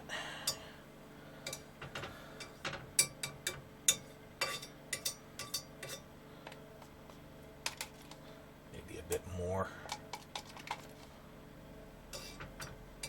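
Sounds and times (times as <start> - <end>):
knife scraping container and pan: 12.1 - 12.5.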